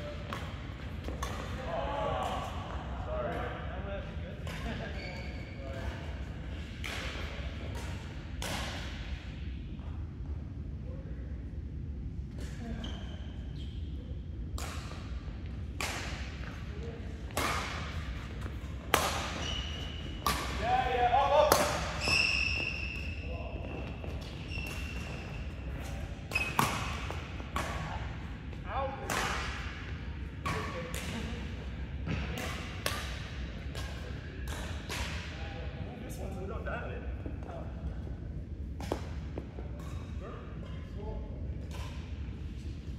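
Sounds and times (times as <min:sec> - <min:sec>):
rackets striking shuttlecock: 0:14.5 - 0:16.6, 0:17.3 - 0:20.6, 0:26.3 - 0:27.9.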